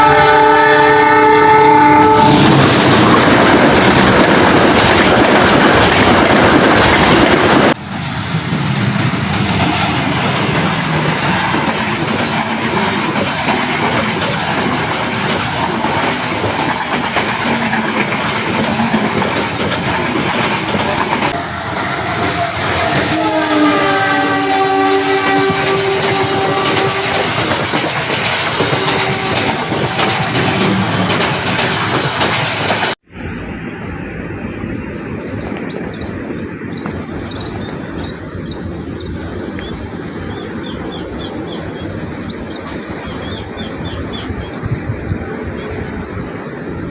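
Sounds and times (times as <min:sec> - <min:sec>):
train horn chord: 0:00.0 - 0:02.6, 0:21.3 - 0:27.4, 0:28.6 - 0:30.8
train wheels on rails: 0:00.0 - 0:46.9.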